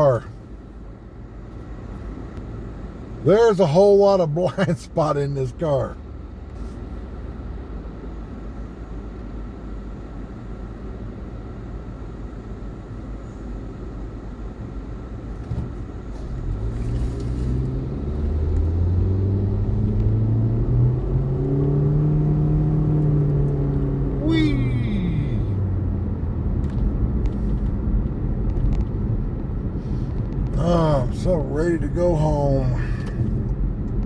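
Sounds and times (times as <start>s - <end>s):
road rumble: 0.0s - 34.0s
car engine accelerating: 15.3s - 34.0s.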